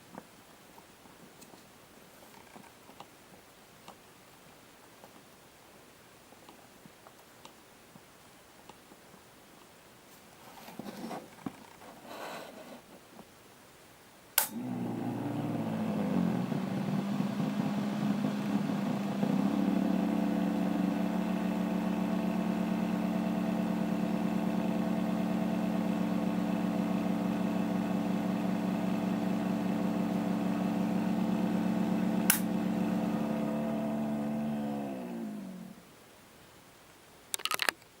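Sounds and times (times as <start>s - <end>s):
cooling fan humming: 14.4s - 35.9s
power switch click: 32.3s - 32.5s.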